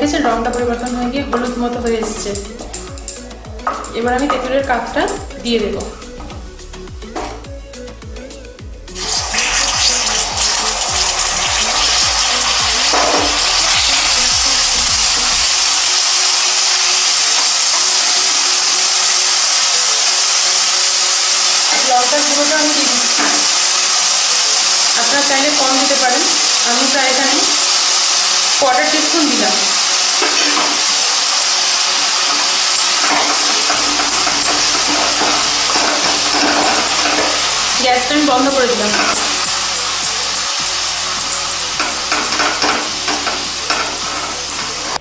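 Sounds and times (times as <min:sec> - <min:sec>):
sugar syrup sizzling in a pan: 0:09.0 - 0:45.0
spoon stirring: 0:32.0 - 0:40.6, 0:41.3 - 0:45.0.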